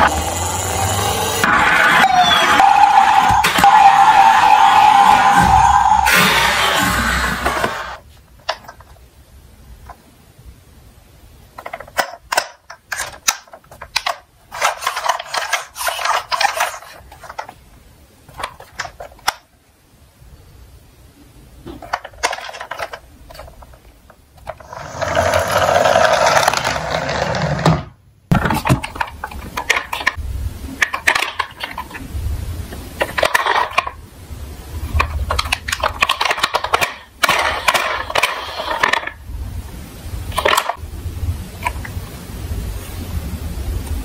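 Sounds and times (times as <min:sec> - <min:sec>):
toy cars rolling and clattering: 0:11.6 - 0:17.6, 0:18.3 - 0:19.5, 0:21.7 - 0:30.2, 0:30.8 - 0:32.1, 0:33.0 - 0:34.0, 0:34.9 - 0:39.2, 0:40.3 - 0:40.8.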